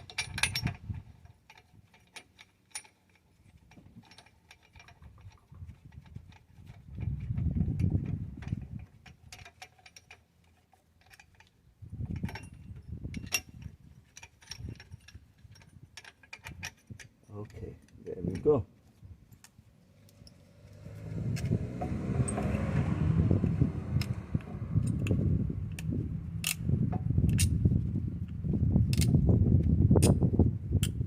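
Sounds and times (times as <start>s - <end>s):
metal clicks and clinks: 0.0s - 18.6s, 19.4s - 22.8s, 23.4s - 27.5s, 28.9s - 29.1s
low rumble: 19.8s - 31.0s.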